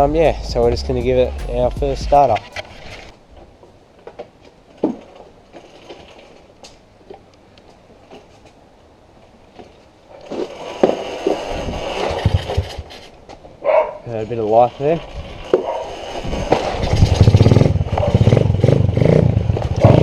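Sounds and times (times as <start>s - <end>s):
engine clicks and knocks: 1.4s - 3.1s
small engine running roughly: 14.6s - 20.0s.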